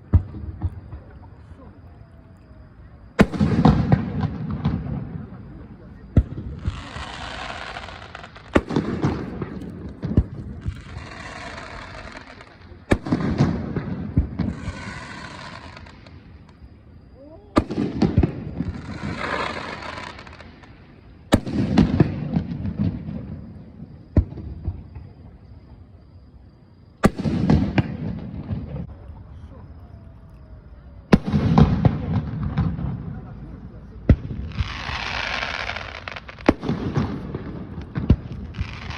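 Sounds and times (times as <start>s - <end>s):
fireworks bangs: 0.0s - 1.6s, 3.0s - 16.8s, 17.4s - 25.4s, 27.0s - 28.9s, 31.1s - 38.9s
crackling hisses of shells: 6.6s - 10.0s, 14.4s - 16.7s, 18.7s - 21.5s, 34.5s - 36.7s.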